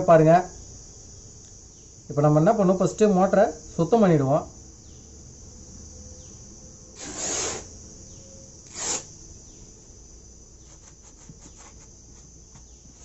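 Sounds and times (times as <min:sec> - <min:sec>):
crickets trilling: 0:00.0 - 0:13.0
rasping rubs on pump casing: 0:07.0 - 0:07.6, 0:08.7 - 0:09.1, 0:10.6 - 0:13.0.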